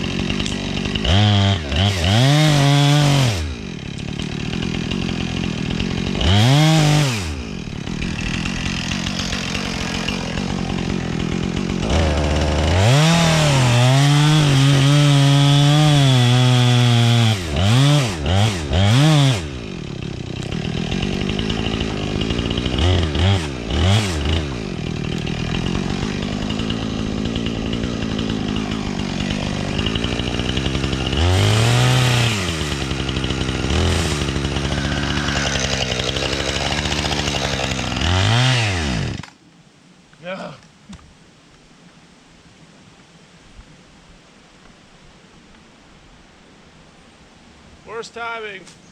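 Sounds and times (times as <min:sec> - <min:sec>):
chainsaw cutting: 0:00.0 - 0:39.4
chainsaw idling and revving: 0:00.0 - 0:39.4.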